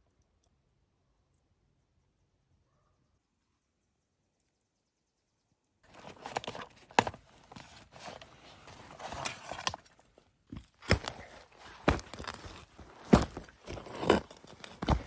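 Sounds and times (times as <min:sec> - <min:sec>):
footsteps on wet forest floor: 0:10.5 - 0:15.0.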